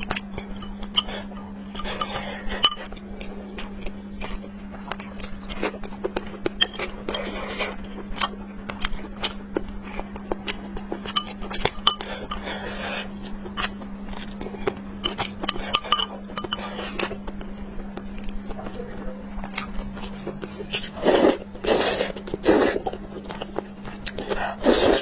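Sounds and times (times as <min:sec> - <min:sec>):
low hum: 0:00.0 - 0:08.2, 0:09.9 - 0:18.2
utensils clinking against dishes: 0:00.5 - 0:03.0, 0:06.6 - 0:07.5, 0:11.1 - 0:12.8, 0:15.0 - 0:17.1.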